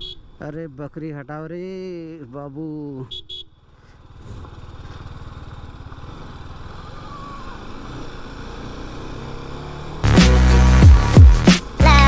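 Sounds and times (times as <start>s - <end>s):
motorcycle engine running: 3.6s - 12.0s.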